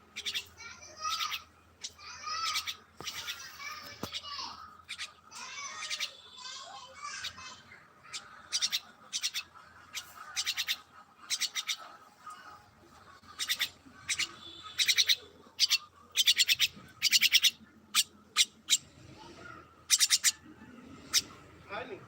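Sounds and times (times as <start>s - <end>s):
bird clicking calls: 2.4s - 4.3s, 13.3s - 18.8s, 19.9s - 20.4s.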